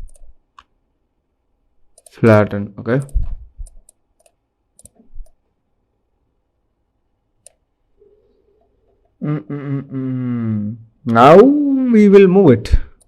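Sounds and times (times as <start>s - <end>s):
computer mouse clicks: 0.0s - 0.8s, 1.9s - 2.2s, 2.9s - 5.4s, 7.4s - 7.6s
person's voice: 9.2s - 12.9s.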